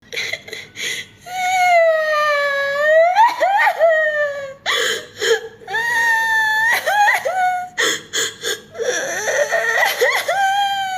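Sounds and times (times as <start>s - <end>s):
person crying and sobbing: 0.0s - 10.9s
gasping sobs: 4.0s - 10.9s.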